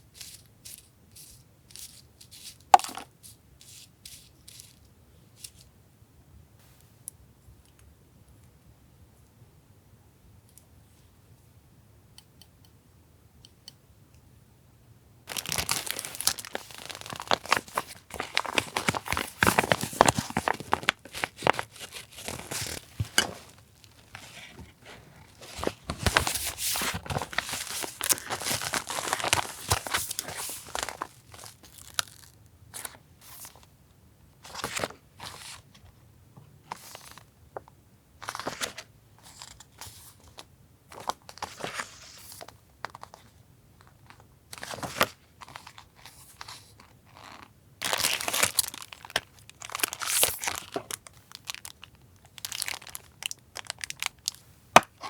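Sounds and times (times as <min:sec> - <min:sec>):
packaging crinkling and tearing: 0:15.3 - 0:33.0, 0:47.8 - 0:55.0.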